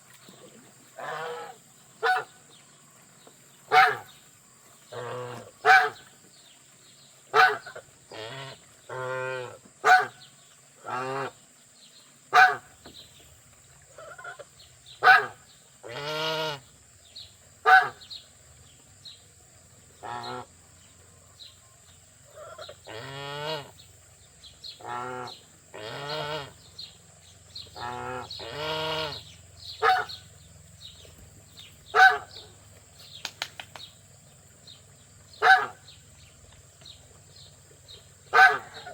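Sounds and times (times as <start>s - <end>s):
geese honking: 1.0s - 2.3s, 3.7s - 4.1s, 4.9s - 6.0s, 24.8s - 26.6s, 27.8s - 30.2s, 31.9s - 32.5s, 35.4s - 35.8s, 38.3s - 38.9s.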